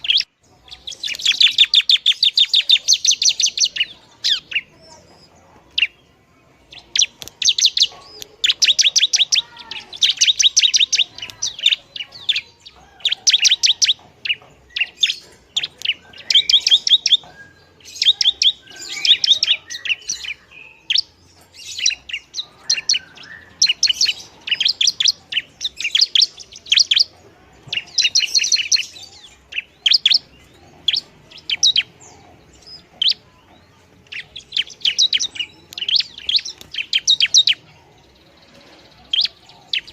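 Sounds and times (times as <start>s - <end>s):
bird chattering trills: 0.0s - 6.0s, 6.6s - 39.9s.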